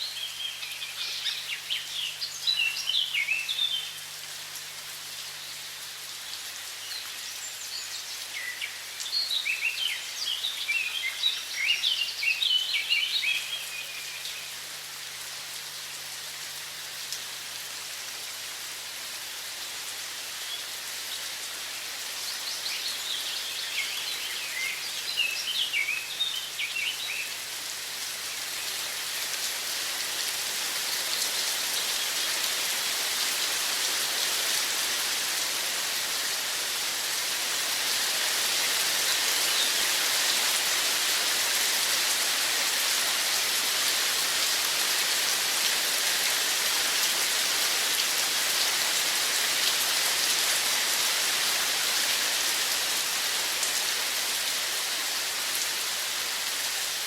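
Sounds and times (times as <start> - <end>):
songbirds chirping: 0.0 - 16.6, 22.0 - 29.2, 37.8 - 42.1.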